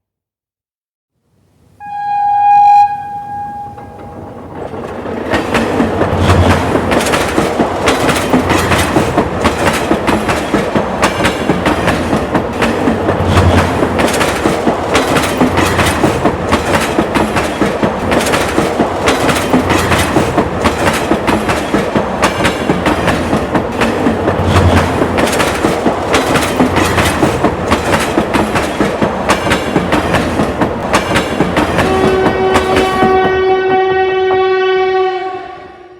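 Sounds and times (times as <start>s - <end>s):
train horn blast: 1.8s - 4.3s, 31.8s - 35.9s
train wheels clicking over rail joints: 3.8s - 33.5s.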